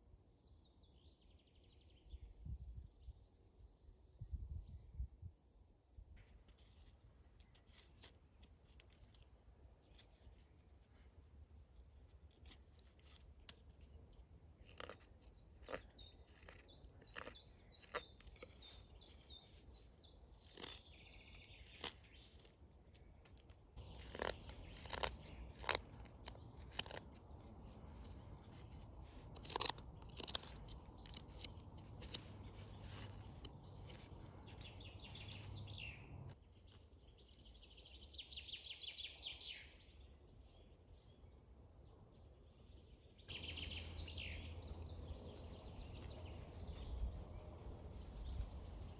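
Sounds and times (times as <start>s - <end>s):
songbirds singing: 8.7s - 11.1s, 12.3s - 48.9s
sharp clicks and crunches: 11.8s - 36.4s.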